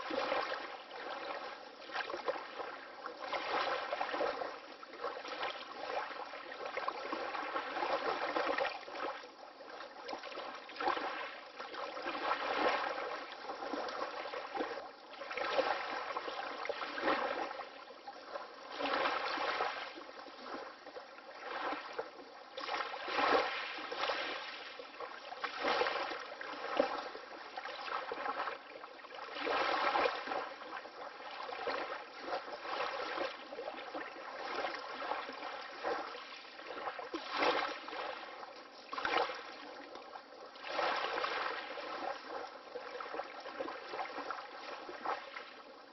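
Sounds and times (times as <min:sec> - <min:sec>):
water lapping: 0:00.0 - 0:45.9.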